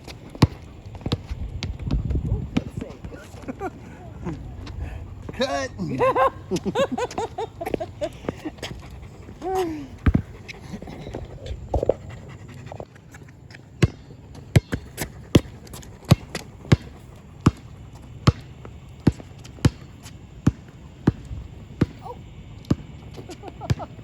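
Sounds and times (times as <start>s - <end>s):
basketball bouncing on court: 0.3s - 3.3s, 10.0s - 10.3s, 13.8s - 24.0s.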